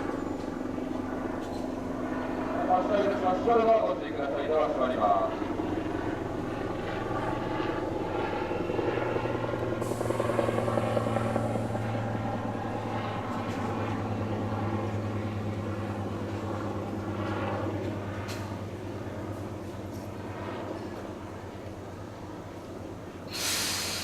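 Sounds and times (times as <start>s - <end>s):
brief high hiss: 23.3s - 24.0s.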